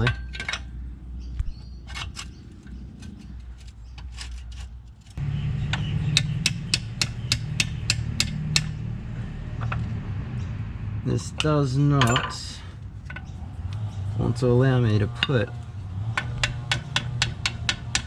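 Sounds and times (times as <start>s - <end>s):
metal tools clinking and knocking: 0.0s - 0.8s, 11.2s - 13.4s.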